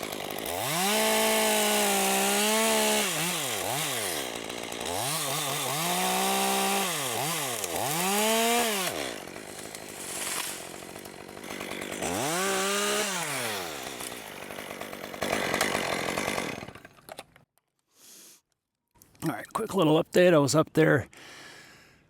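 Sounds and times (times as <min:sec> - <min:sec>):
chainsaw revving and idling: 0:00.0 - 0:17.0.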